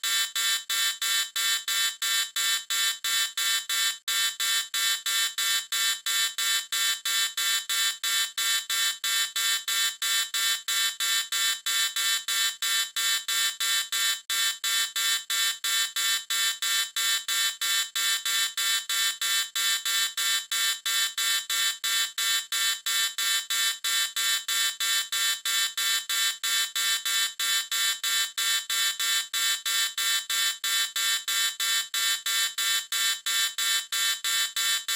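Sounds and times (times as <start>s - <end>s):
electronic alarm beeping: 25.8s - 34.9s.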